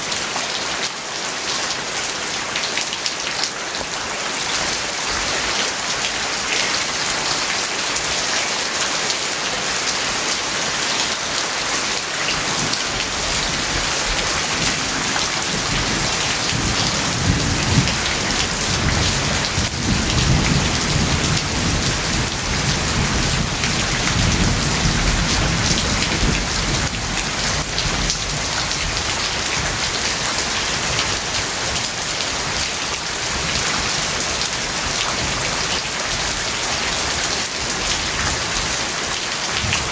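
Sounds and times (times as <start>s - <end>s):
steady rain falling: 0.0s - 39.9s
low rumble of thunder: 12.4s - 29.9s.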